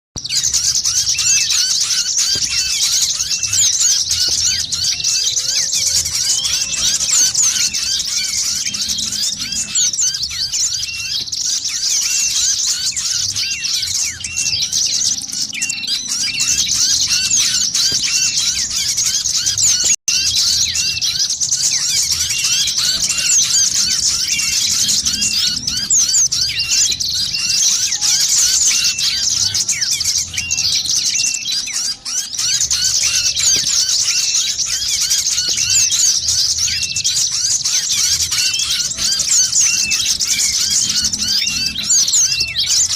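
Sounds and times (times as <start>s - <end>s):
small songbirds chirping: 0.2s - 42.9s.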